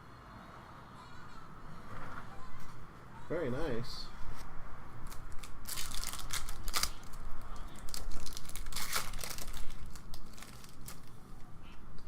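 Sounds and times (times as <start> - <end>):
card packaging crinkling: 5.0 - 11.3.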